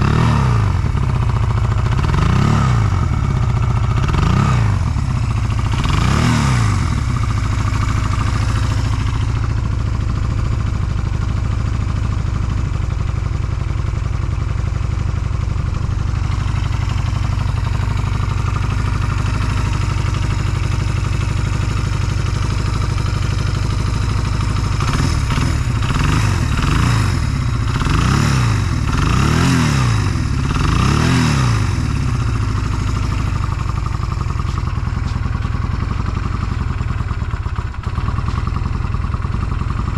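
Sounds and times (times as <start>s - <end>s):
motorcycle throttle blips: 0.0s - 12.3s, 15.4s - 39.9s
motorcycle engine idling: 0.0s - 39.9s.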